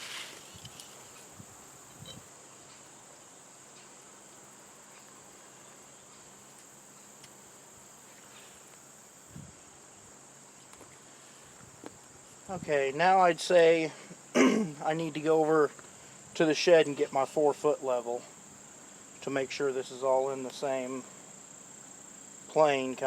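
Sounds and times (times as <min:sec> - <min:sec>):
crickets trilling: 0:00.0 - 0:23.0.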